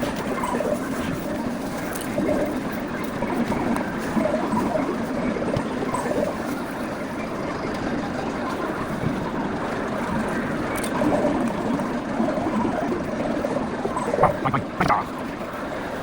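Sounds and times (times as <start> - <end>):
game arcade din: 14.2 - 15.1.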